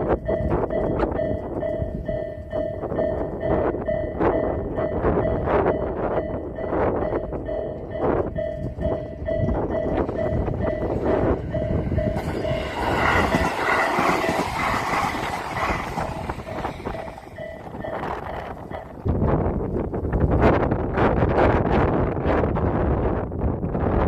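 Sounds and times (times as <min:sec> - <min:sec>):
level crossing alarm: 0:00.0 - 0:19.1
train passing in a rush: 0:00.0 - 0:23.9
train wheels clacking: 0:06.6 - 0:19.1.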